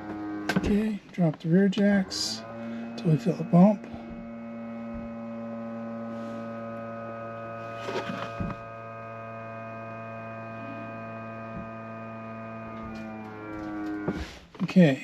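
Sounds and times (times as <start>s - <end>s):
hydraulic pump electric hum: 0.0s - 15.0s.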